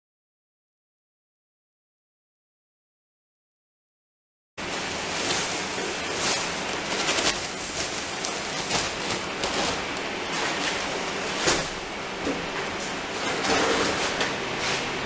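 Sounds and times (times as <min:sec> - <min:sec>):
mortar mixer churning: 0:04.6 - 0:15.0.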